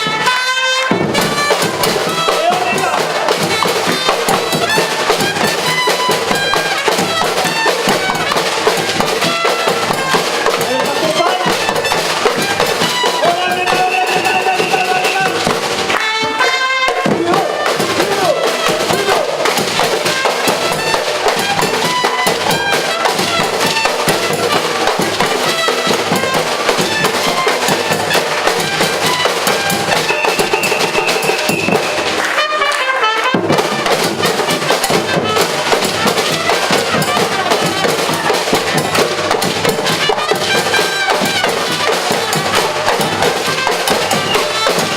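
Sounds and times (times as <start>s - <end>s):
drums playing a driving rhythm: 0.0s - 44.9s
held high notes with rising run: 17.6s - 32.4s.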